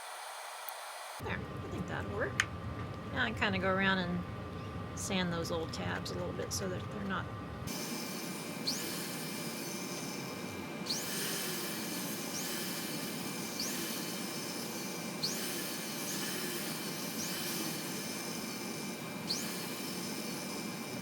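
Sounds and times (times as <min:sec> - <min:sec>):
sanding metal hiss: 0:07.7 - 0:21.0.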